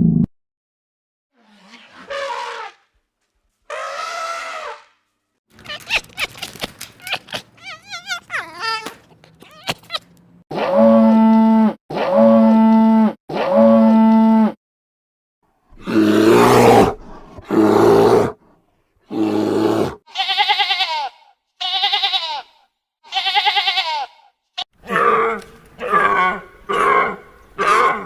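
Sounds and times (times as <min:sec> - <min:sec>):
cow mooing: 0:10.6 - 0:14.6
high quavering bleats: 0:20.1 - 0:24.3.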